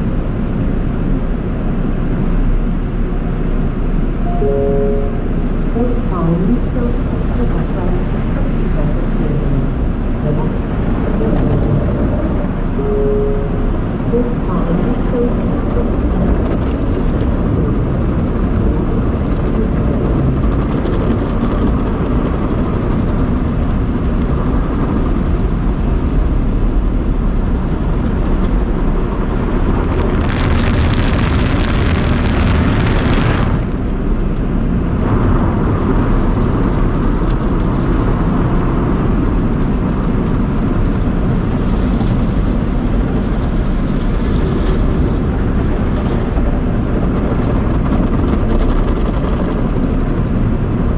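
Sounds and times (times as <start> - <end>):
car wash machinery rumbling: 0.0 - 50.9
thin high whine: 4.2 - 11.0, 11.8 - 16.0.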